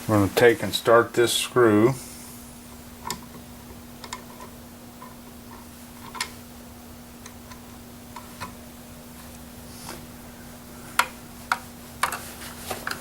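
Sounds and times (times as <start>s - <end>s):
steady low hum: 0.0s - 13.0s
screwdriver clicks and taps: 4.0s - 5.1s.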